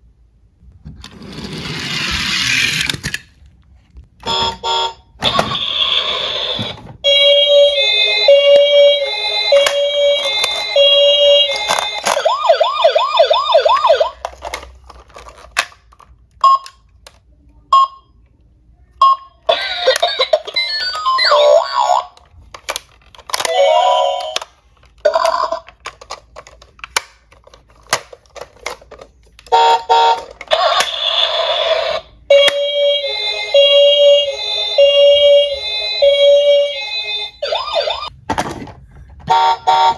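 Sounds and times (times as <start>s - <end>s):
toy cars rolling and clacking: 1.0s - 3.4s, 8.1s - 16.2s, 22.1s - 32.6s
toy siren wailing and pulsing: 4.3s - 14.3s, 19.5s - 22.2s, 29.6s - 38.1s
toy siren yelping: 4.5s - 14.2s, 19.5s - 22.2s, 29.6s - 38.1s.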